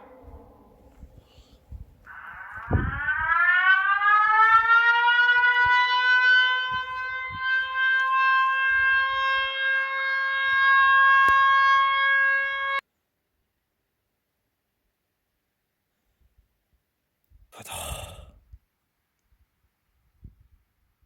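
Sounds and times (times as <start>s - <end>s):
warning siren wailing: 0.0s - 12.8s.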